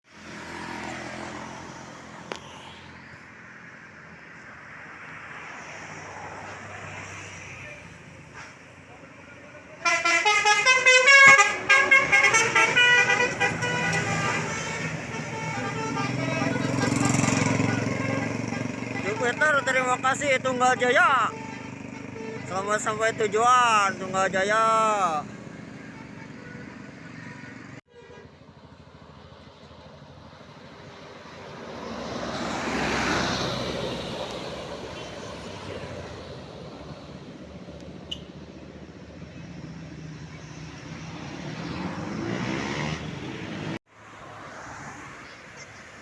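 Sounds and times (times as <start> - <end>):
large vehicles passing: 0.1 - 46.0
bus engine running: 9.7 - 24.2
bus musical horn: 9.8 - 23.0, 25.0 - 28.4.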